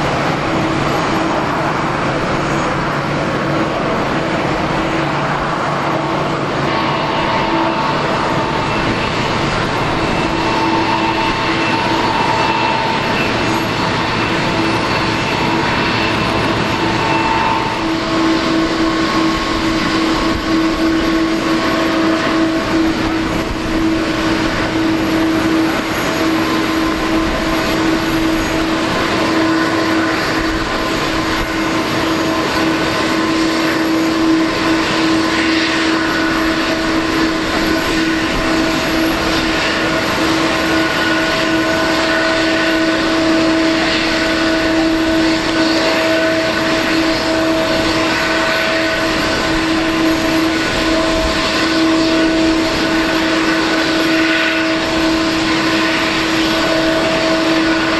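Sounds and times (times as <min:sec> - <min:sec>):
jet engines whining: 0:00.0 - 0:57.9.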